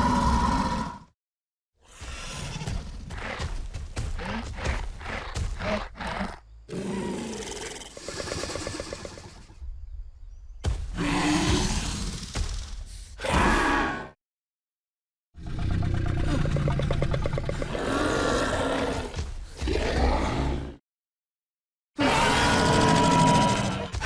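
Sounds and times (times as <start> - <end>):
creature grunts and snarls: 0.0 - 1.1, 1.8 - 9.5, 11.0 - 14.2, 15.4 - 20.8, 22.0 - 24.0
loud creature roar: 0.0 - 1.1, 4.2 - 9.1, 13.2 - 14.2, 15.4 - 20.8, 22.0 - 24.0
growl with rattling pulse: 15.4 - 19.1.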